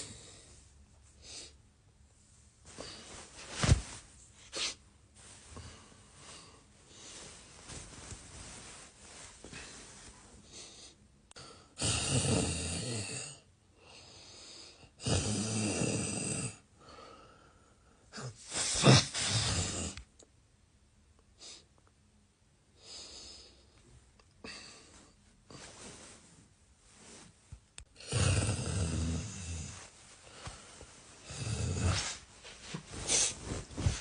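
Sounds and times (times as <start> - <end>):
man snoring: 11.8 - 13.4, 15.0 - 16.6, 18.2 - 20.0, 28.0 - 29.8, 31.2 - 32.2.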